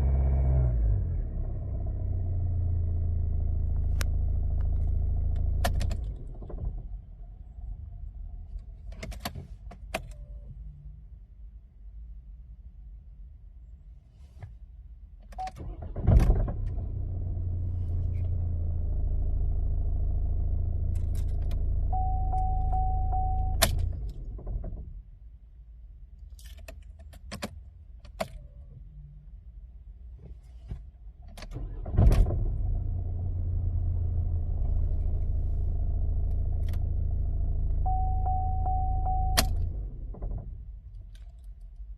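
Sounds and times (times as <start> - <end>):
diesel engine starting with clunk: 15.3 - 25.0, 31.2 - 41.1
engine idling with low rattle: 15.3 - 41.9.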